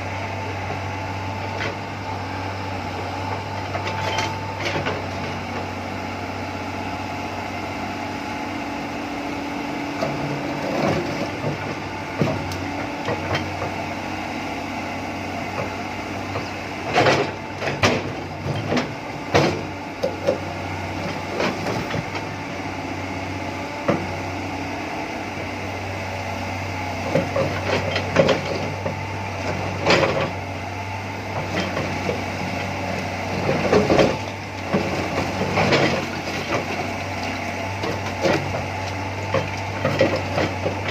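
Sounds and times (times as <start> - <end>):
excavator running: 0.0 - 40.9.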